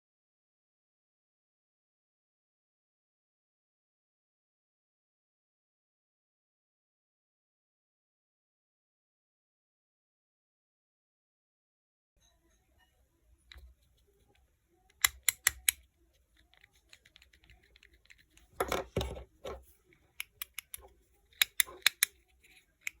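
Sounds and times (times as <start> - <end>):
plastic rattling: 16.4 - 19.8.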